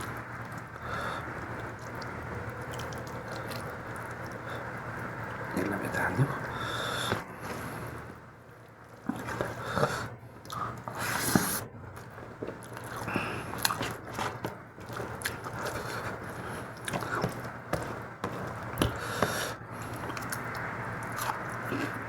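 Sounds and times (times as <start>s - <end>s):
wet chewing and lip-smacking: 0.0s - 22.0s.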